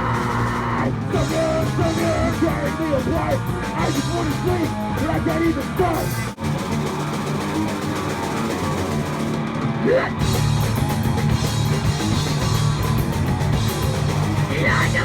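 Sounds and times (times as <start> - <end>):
punk band playing live: 0.0 - 15.0
person singing: 1.1 - 6.2.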